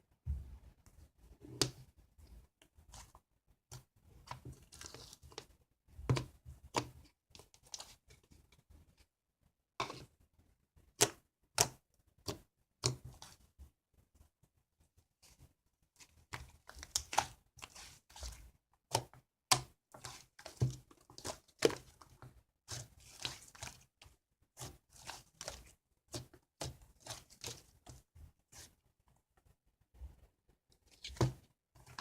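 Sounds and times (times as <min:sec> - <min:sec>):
hands squishing slime: 0:16.0 - 0:28.8.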